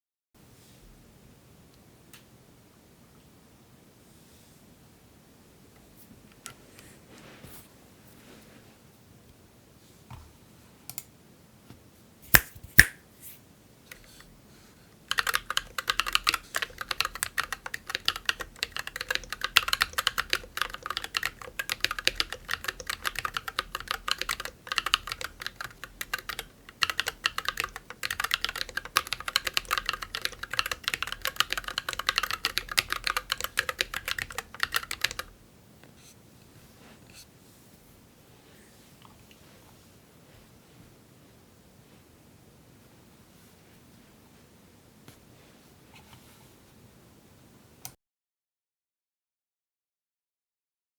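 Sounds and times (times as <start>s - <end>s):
mechanical keyboard clicks: 15.1s - 35.3s
fast typing on keyboard: 15.1s - 35.4s.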